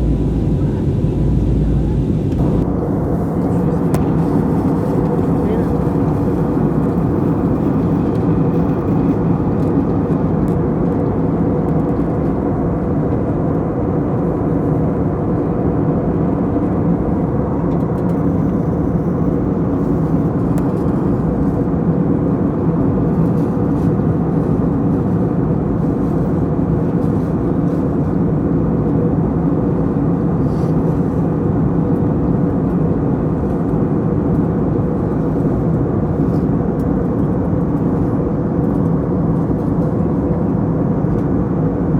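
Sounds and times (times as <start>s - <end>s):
faint hum: 0.0s - 4.1s
airliner cabin engine drone: 0.0s - 41.9s.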